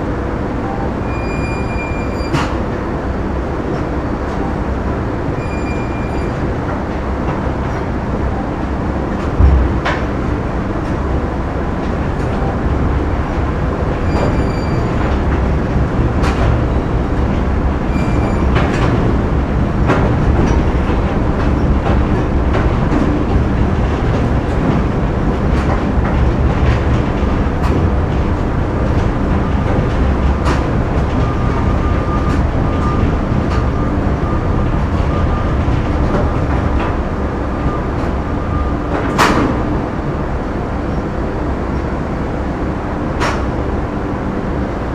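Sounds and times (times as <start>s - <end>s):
heavy machinery rumbling: 0.0s - 44.9s
knocks and clanks: 9.1s - 11.0s, 14.0s - 33.9s.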